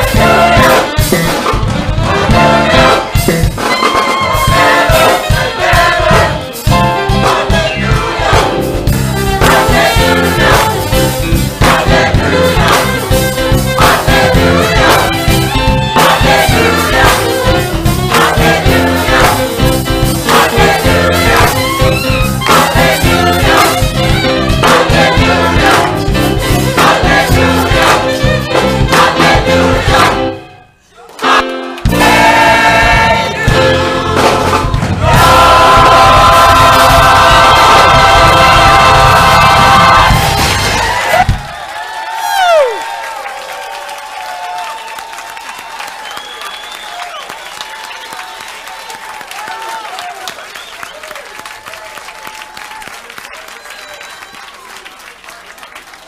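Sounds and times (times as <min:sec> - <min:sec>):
instrumental backing with beat: 0:00.0 - 0:30.5, 0:31.2 - 0:41.6
choir singing gospel song: 0:00.0 - 0:30.6, 0:31.2 - 0:41.3.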